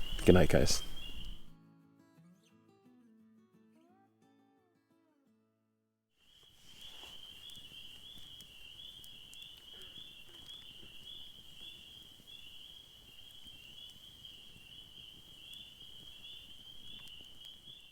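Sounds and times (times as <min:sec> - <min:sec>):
spring peepers calling: 0:00.0 - 0:01.5, 0:06.3 - 0:17.9.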